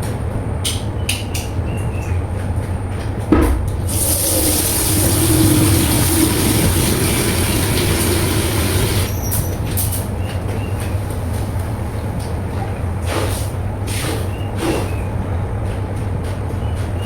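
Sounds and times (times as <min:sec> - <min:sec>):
wet vacuum cleaner running: 0:03.9 - 0:09.1.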